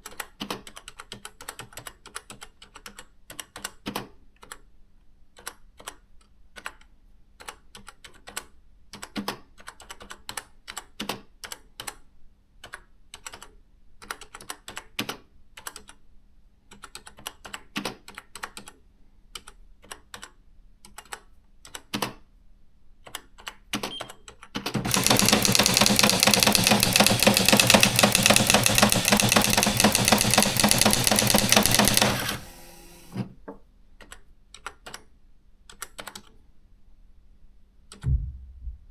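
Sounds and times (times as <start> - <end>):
electronic typewriter typing: 24.8 - 33.2.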